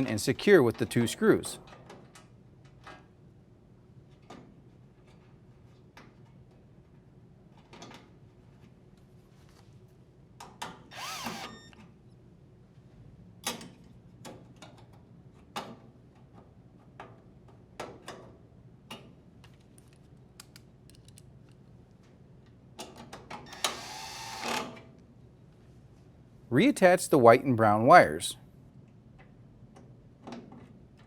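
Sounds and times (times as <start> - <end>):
drill driver whirring: 10.9 - 11.8, 23.5 - 24.7.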